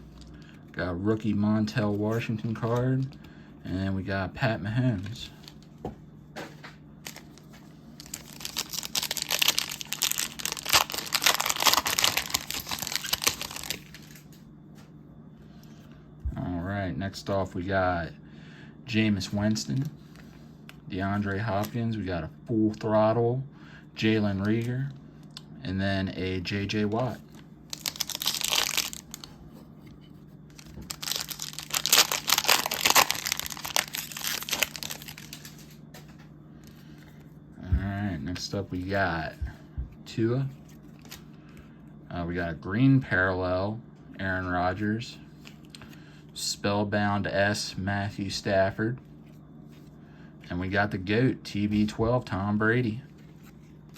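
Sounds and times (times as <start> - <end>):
plastic wrapper tearing and crinkling: 7.0 - 14.3, 27.1 - 29.4, 30.5 - 36.1.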